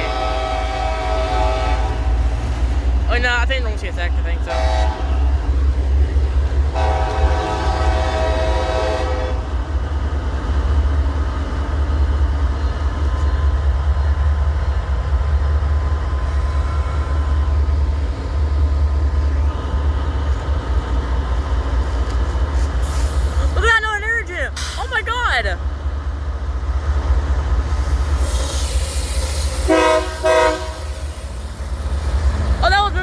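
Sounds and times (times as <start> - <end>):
diesel locomotive horn: 0.0 - 2.6, 4.4 - 5.5, 6.7 - 9.6, 29.6 - 31.2
train rumbling past: 0.0 - 33.0.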